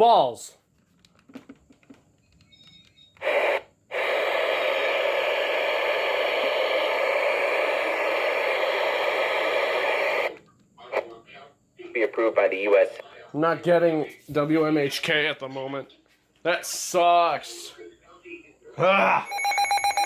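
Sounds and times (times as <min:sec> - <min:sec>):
radio static hiss: 0:03.2 - 0:13.3.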